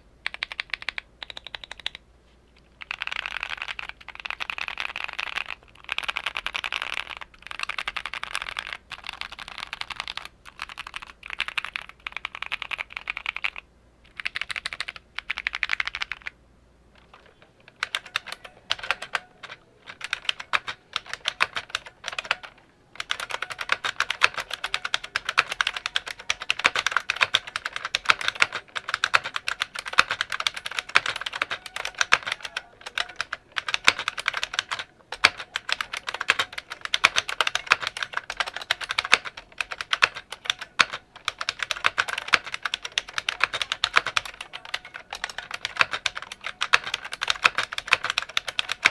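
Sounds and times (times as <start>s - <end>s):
typing on clicky keyboard: 0.2s - 2.0s, 2.8s - 16.4s, 17.0s - 48.9s
typing on tactile keyboard: 0.2s - 2.0s, 2.8s - 16.4s, 17.0s - 48.9s.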